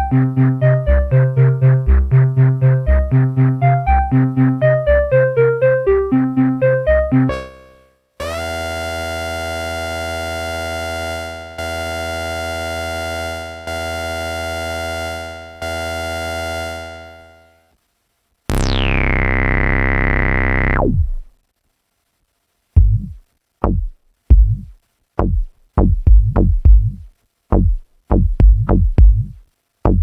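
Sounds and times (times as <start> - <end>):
bright sustained synthesizer note: 18.5 - 21.2
synthesizer filter sweep: 18.5 - 21.3
synthesizer sequence: 18.5 - 21.3.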